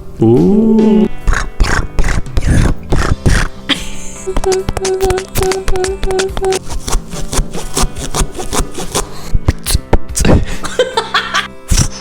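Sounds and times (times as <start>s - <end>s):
beatbox mouth clicks: 0.8s - 3.6s, 4.3s - 10.4s, 11.7s - 12.0s
beatbox hissing bursts: 1.0s - 3.6s.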